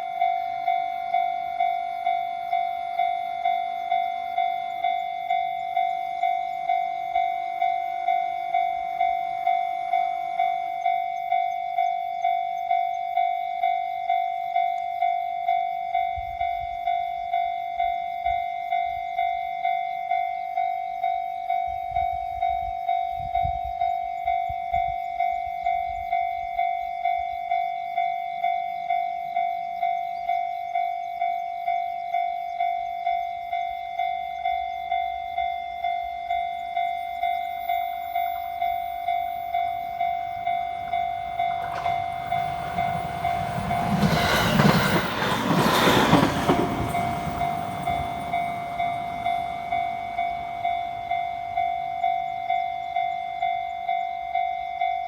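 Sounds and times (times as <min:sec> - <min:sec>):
higher alarm layer: 0:36.9 - 0:52.4.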